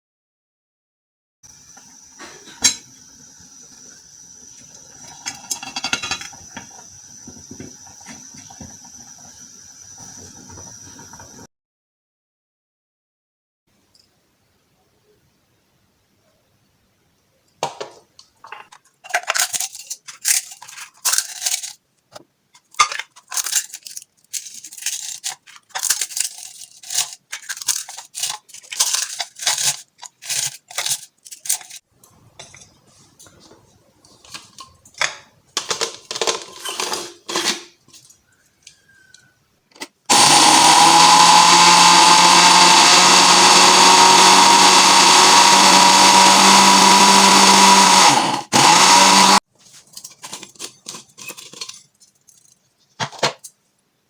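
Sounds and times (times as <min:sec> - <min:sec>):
electric blender running: 0:01.5 - 0:11.5, 0:40.1 - 0:49.4
items being handled: 0:17.6 - 0:40.1, 0:48.6 - 0:54.0.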